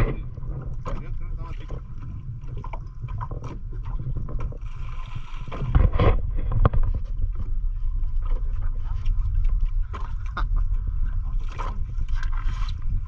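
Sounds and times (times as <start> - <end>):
water sloshing: 0.0 - 13.0
wind rumbling on microphone: 0.0 - 13.0
knocks on boat: 5.5 - 7.5.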